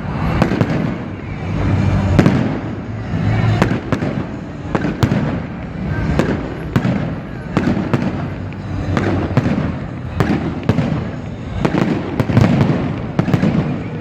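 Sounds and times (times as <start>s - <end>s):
fireworks bangs: 0.0s - 14.0s
low rumble of echoing bursts: 0.0s - 14.0s.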